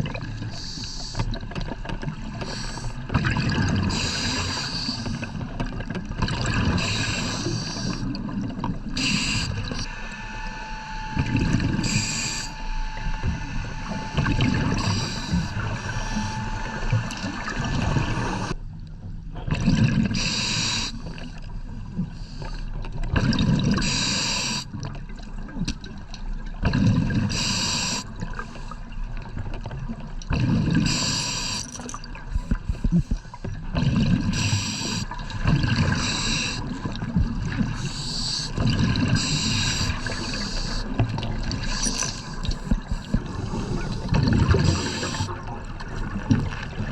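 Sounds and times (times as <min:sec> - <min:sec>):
exhaled bubbles gurgling: 0:00.0 - 0:09.9, 0:11.1 - 0:18.6, 0:19.4 - 0:22.3, 0:23.0 - 0:46.9
scuba regulator breathing hiss: 0:00.5 - 0:01.2, 0:03.9 - 0:05.2, 0:06.7 - 0:08.0, 0:09.0 - 0:09.8, 0:11.8 - 0:12.6, 0:14.7 - 0:16.4, 0:20.2 - 0:21.0, 0:23.8 - 0:24.7, 0:27.3 - 0:28.8, 0:30.9 - 0:31.7, 0:34.3 - 0:35.2, 0:35.8 - 0:36.8, 0:37.7 - 0:41.0, 0:41.6 - 0:45.3.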